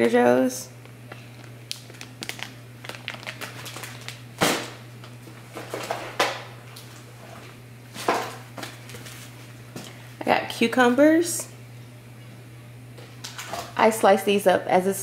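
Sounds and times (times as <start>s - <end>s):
packaging rustling: 1.1s - 6.0s.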